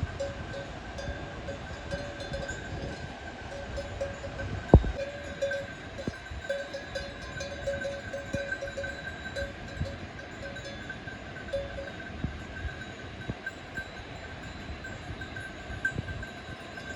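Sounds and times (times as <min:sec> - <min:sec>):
livestock bells clinking: 0:00.0 - 0:16.9.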